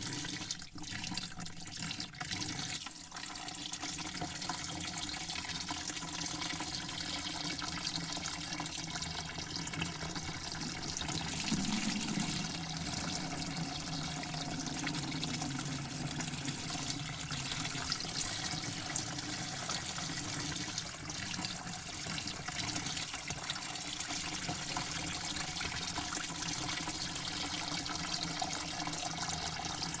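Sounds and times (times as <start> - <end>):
water running: 9.4 - 21.4.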